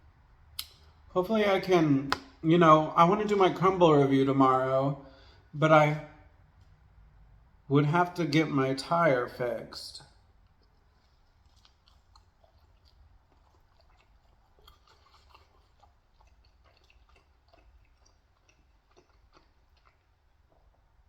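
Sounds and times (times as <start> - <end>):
chewing food: 10.1 - 21.0.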